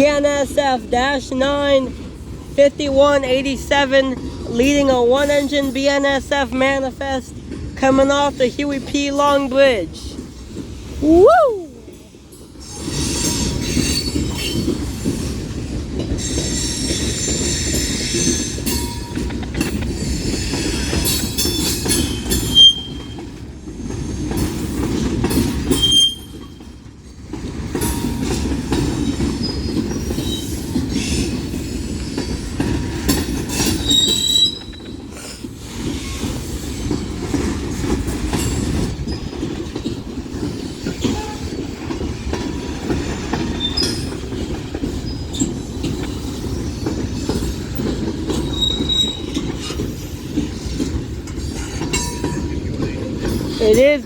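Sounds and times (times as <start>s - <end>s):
freight train rumbling past: 0.0s - 54.0s
high-pitched wheel squeal: 22.5s - 23.2s, 33.8s - 34.9s, 48.5s - 49.4s.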